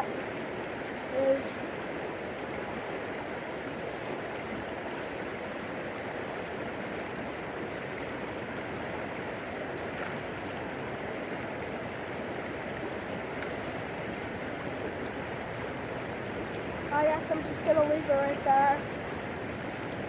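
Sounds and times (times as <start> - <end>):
creek water flowing: 0.0 - 20.0.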